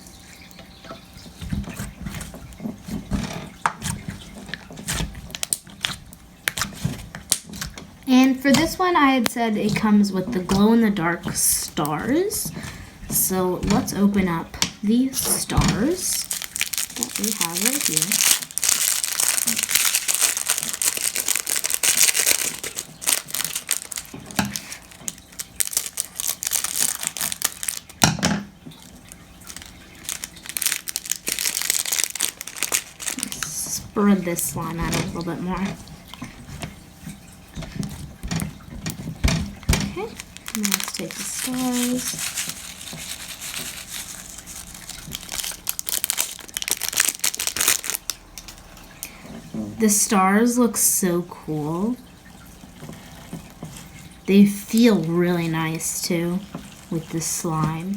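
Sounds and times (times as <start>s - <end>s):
packet crinkling and tearing: 4.6s - 7.7s, 15.8s - 28.0s, 28.7s - 35.7s, 39.8s - 48.8s.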